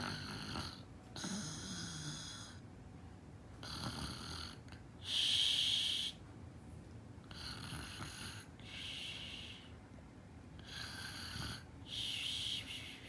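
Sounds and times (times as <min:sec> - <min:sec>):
woman snoring: 0:00.0 - 0:02.6, 0:03.6 - 0:06.2, 0:07.3 - 0:09.6, 0:10.6 - 0:13.0.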